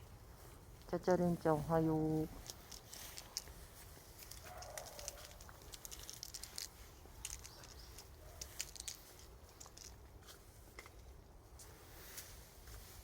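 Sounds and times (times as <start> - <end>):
faint rustling: 0.0 - 13.0
light pattering clicks: 2.2 - 10.0.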